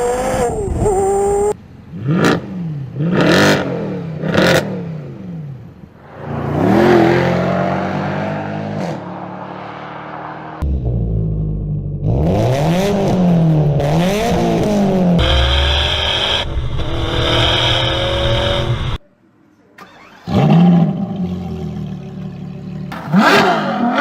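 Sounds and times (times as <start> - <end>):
sports car engine revving: 10.6 - 19.0, 20.0 - 24.0.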